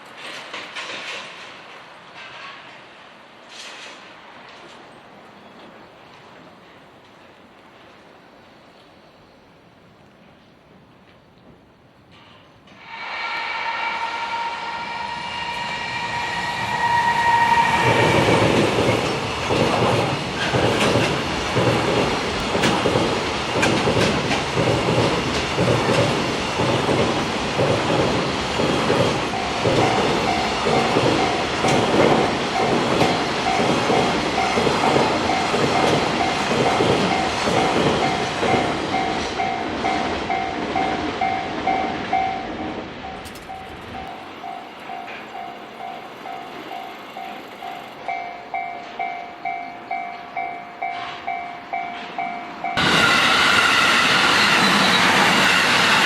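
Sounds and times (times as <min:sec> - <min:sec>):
train wheels clattering: 0:00.0 - 0:07.2, 0:11.4 - 0:56.0
locomotive horn: 0:12.9 - 0:18.8
level crossing bell ringing: 0:43.6 - 0:52.8.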